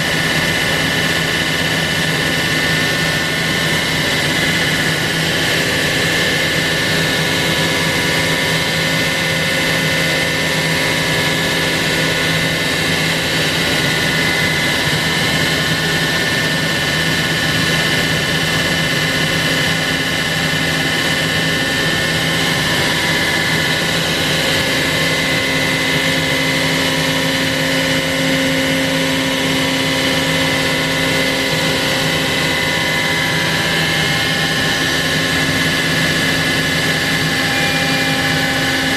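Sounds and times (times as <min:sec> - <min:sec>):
router spindle milling wood: 0:00.0 - 0:38.9.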